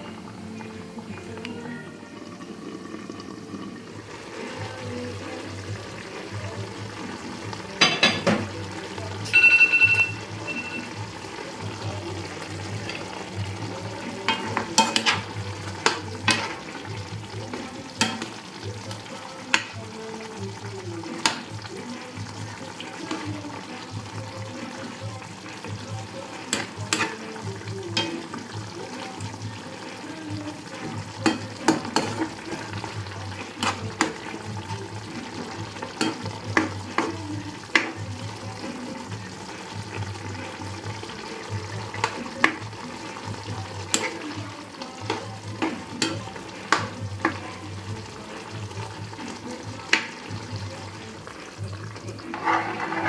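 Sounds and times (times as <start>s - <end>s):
low sizzle: 0.0s - 53.0s
spoon scraping cooking pan: 4.2s - 53.0s
brief high-pitched ring: 9.3s - 10.8s.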